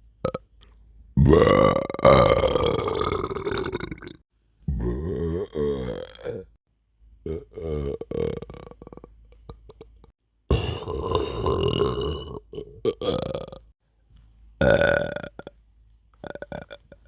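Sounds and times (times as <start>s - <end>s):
person burping: 0.2s - 0.4s, 1.2s - 6.6s, 7.3s - 13.7s, 14.6s - 15.6s, 16.2s - 17.0s.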